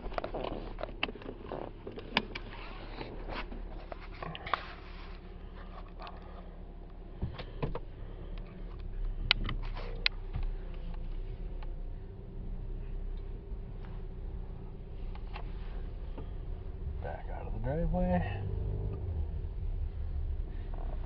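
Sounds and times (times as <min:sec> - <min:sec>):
seatbelt buckle clicking: 0:00.0 - 0:03.5
seatbelt webbing sliding: 0:00.0 - 0:06.4
car engine idling: 0:00.0 - 0:21.0.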